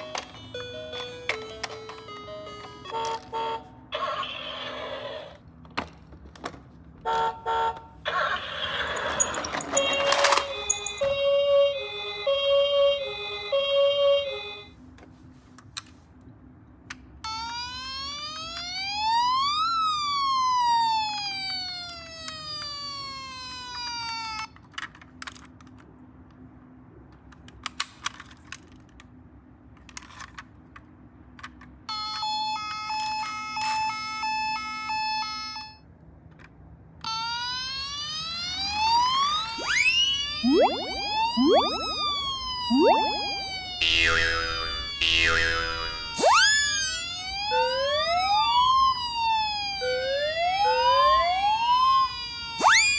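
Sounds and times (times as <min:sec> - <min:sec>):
two-tone ambulance siren: 0:00.0 - 0:04.2, 0:07.1 - 0:14.8, 0:17.2 - 0:24.5, 0:31.9 - 0:35.8, 0:37.0 - 0:52.9
wailing siren: 0:07.1 - 0:14.7, 0:17.3 - 0:24.6, 0:37.0 - 0:52.9
electronic multi-tone siren: 0:07.4 - 0:14.7, 0:17.3 - 0:24.5, 0:37.0 - 0:52.9.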